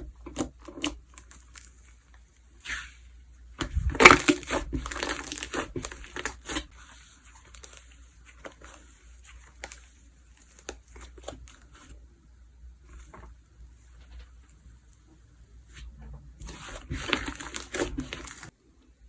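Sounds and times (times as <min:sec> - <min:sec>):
slime crackling crunches: 0:03.6 - 0:06.7, 0:16.4 - 0:18.5.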